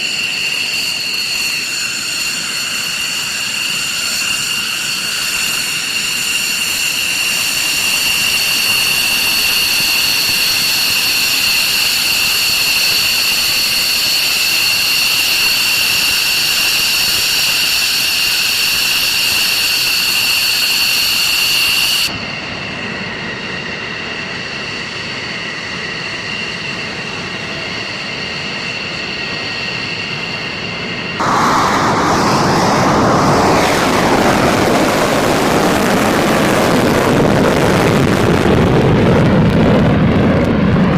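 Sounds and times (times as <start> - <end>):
fighter jet engine whining: 0.0 - 40.9.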